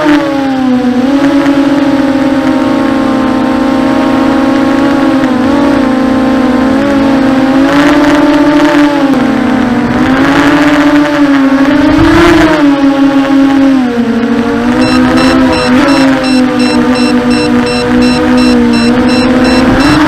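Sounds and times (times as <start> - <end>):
quadcopter motors whining: 14.4 - 20.0.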